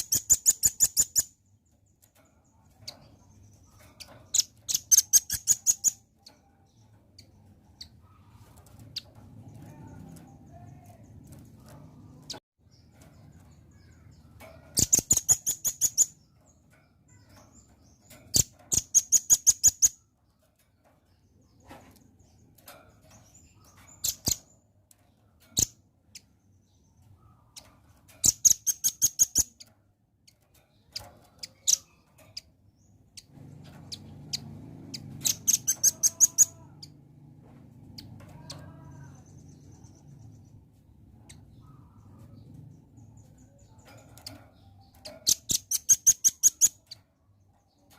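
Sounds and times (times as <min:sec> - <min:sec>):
nuthatch rattling calls: 0:00.0 - 0:01.4, 0:02.1 - 0:10.4, 0:12.2 - 0:20.0, 0:21.3 - 0:29.7, 0:30.3 - 0:32.5, 0:33.1 - 0:36.9, 0:43.0 - 0:47.0.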